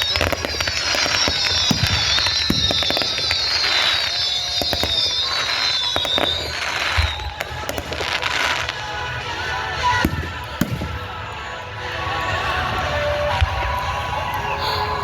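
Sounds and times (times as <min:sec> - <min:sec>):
firework whistles falling in pitch: 0:00.0 - 0:08.9
firework cracks and pops: 0:00.0 - 0:12.5
crackling hiss: 0:00.0 - 0:15.0.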